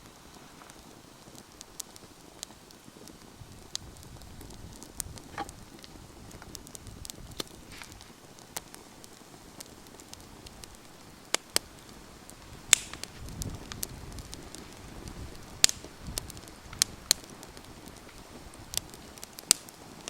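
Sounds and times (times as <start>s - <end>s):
campfire pops and snaps: 0.0s - 20.0s
fire hissing: 0.0s - 20.0s.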